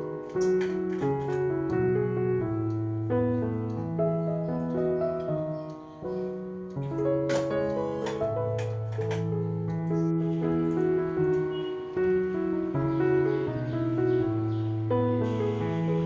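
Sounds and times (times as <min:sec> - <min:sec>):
calm piano music: 0:00.0 - 0:16.0.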